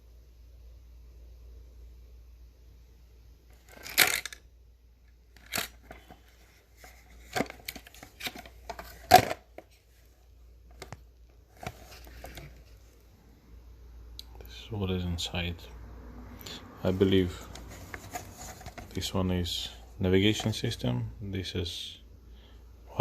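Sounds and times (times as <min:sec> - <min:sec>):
rustling: 0:05.4 - 0:13.1, 0:16.9 - 0:19.1.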